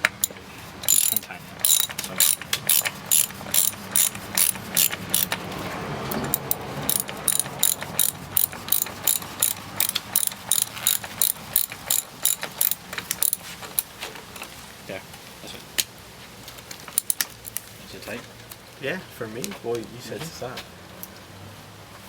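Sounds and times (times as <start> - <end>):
ratchet wrench clicking: 0.0 - 5.5, 6.1 - 13.9, 16.9 - 17.6.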